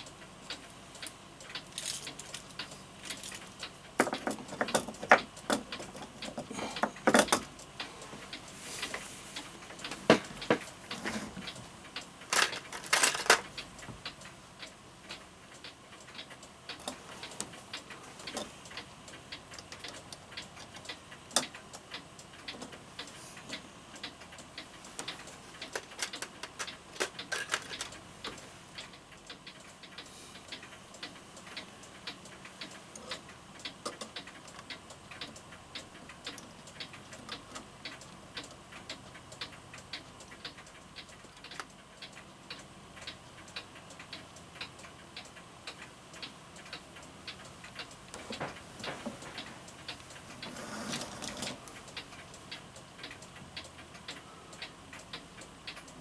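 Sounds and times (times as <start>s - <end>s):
clock ticking: 0.0s - 56.0s
rustling handling noise: 1.7s - 3.6s.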